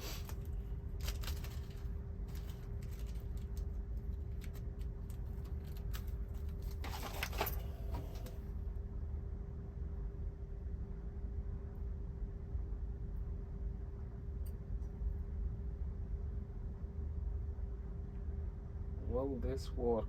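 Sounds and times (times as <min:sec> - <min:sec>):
small parts rattling in containers: 0:00.0 - 0:07.7
steady low hum: 0:00.0 - 0:20.0.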